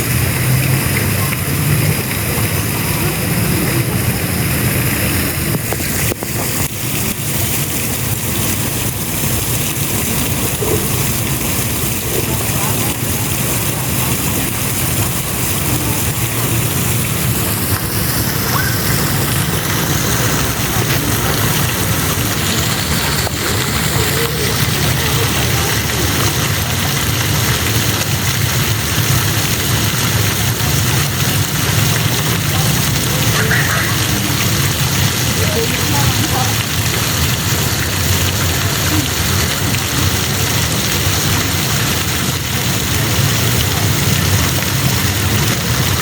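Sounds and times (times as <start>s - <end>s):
water falling in spray: 0.0s - 46.0s.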